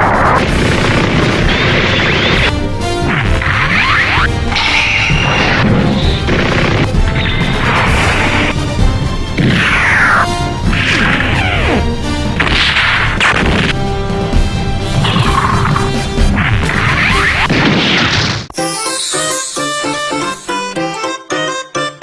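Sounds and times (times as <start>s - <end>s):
background music: 0.0s - 22.0s.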